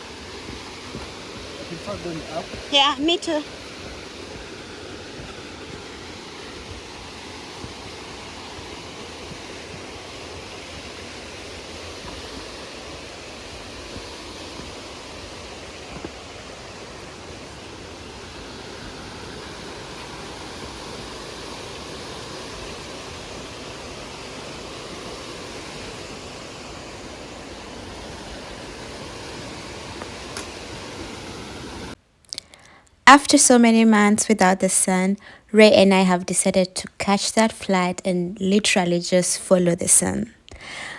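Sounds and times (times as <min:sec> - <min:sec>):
waterfall roaring: 0:00.0 - 0:32.0.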